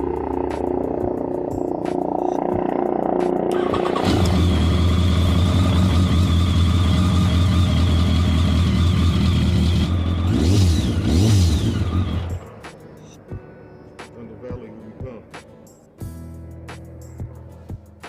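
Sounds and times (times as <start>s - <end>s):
motorcycle engine idling: 0.0s - 13.6s.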